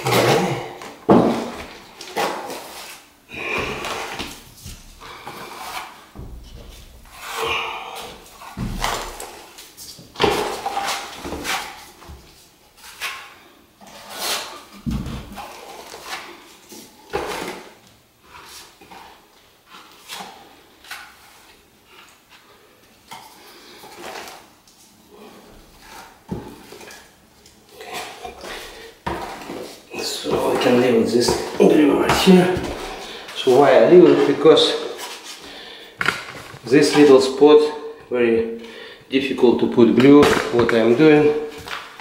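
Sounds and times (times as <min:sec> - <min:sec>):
wooden boards knocking and scraping: 0:01.1 - 0:02.6, 0:08.2 - 0:09.3
heavy thumps: 0:06.1 - 0:09.3.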